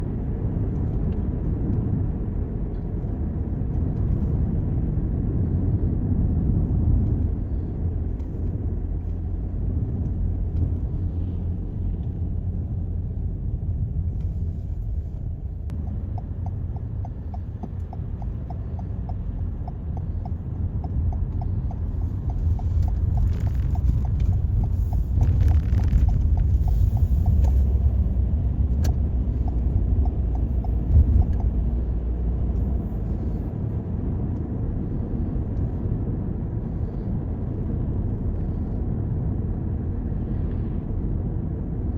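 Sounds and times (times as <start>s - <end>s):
road and engine rumble in car: 0.0s - 41.9s
passing traffic rush: 4.8s - 41.9s
turn signal ticking: 15.1s - 34.6s.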